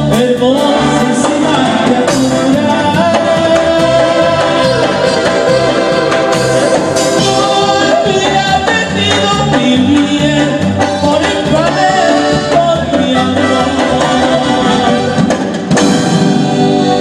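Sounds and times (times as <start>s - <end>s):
person singing: 0.0s - 15.4s
band accompaniment: 0.0s - 17.0s.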